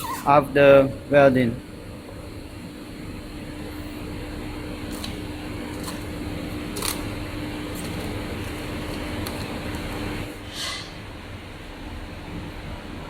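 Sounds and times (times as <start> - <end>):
welding machine humming: 1.6 - 10.4.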